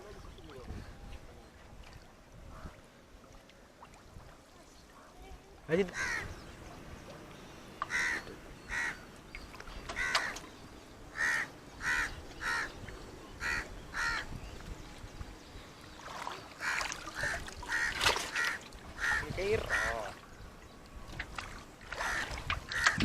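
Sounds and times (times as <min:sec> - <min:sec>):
bird calling: 0:04.7 - 0:14.4, 0:15.4 - 0:23.0.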